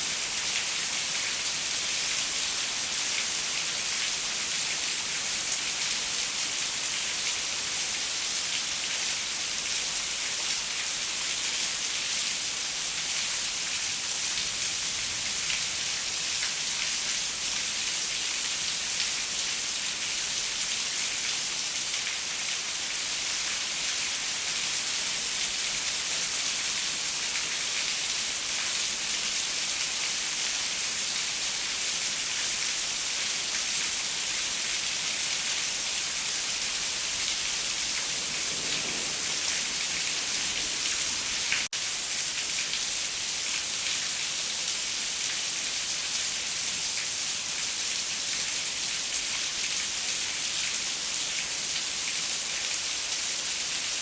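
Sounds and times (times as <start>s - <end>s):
rain pattering on a window: 36.0s - 41.7s.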